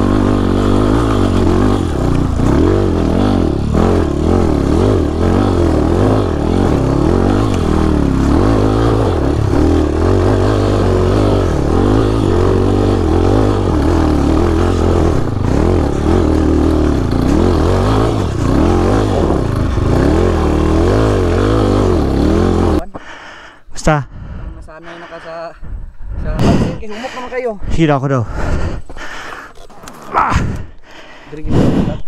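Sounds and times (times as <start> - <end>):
dirt bike engine revving: 0.0 - 22.9.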